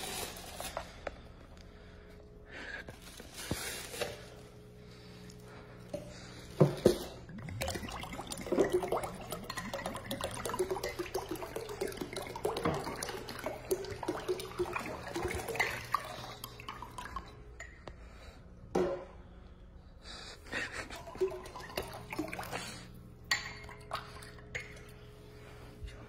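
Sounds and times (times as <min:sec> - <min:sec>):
running water splashing: 0:07.3 - 0:17.3.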